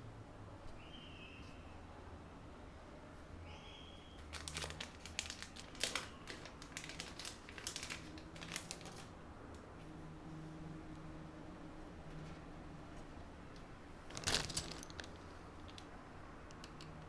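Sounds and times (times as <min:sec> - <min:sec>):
crinkly material crackling: 0:04.2 - 0:09.2, 0:14.0 - 0:16.9.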